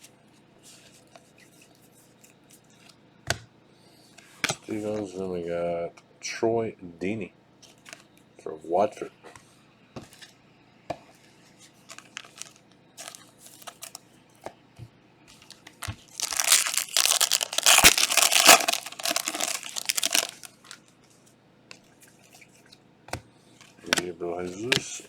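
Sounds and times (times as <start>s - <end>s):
wrapper tearing and crinkling: 11.9s - 14.0s, 15.5s - 20.8s.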